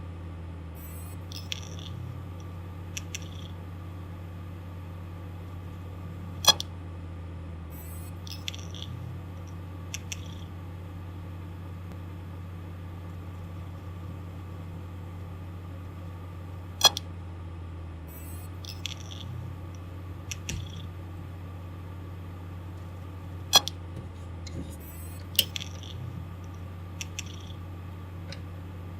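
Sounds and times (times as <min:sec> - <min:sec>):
hard disk drive humming: 0:00.0 - 0:28.9
hard drive clicking: 0:01.2 - 0:03.6, 0:06.4 - 0:06.7, 0:16.8 - 0:17.1, 0:18.5 - 0:21.0, 0:23.5 - 0:28.7.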